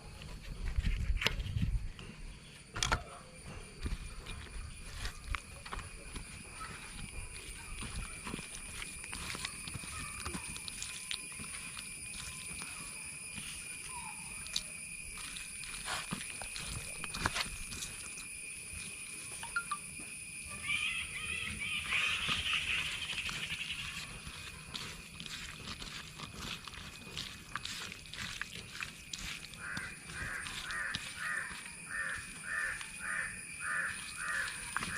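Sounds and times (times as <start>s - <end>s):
high-pitched droning tones: 3.2s - 34.9s
animal calls: 20.4s - 34.9s.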